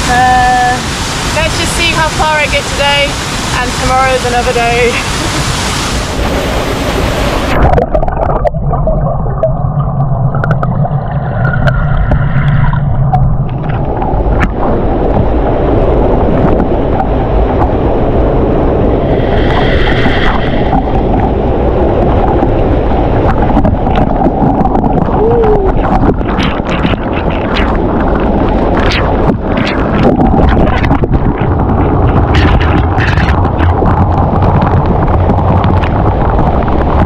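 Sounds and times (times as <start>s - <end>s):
waterfall hissing: 0.0s - 7.7s
muffled underwater churning: 0.0s - 37.0s.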